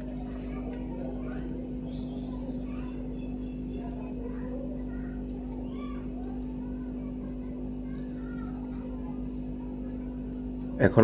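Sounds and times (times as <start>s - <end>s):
faint distant voices: 0.0s - 11.0s
low mechanical hum: 0.0s - 11.0s.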